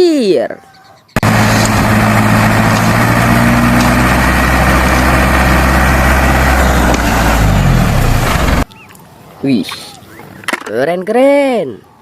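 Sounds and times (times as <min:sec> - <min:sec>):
truck engine idling: 0:01.2 - 0:08.6.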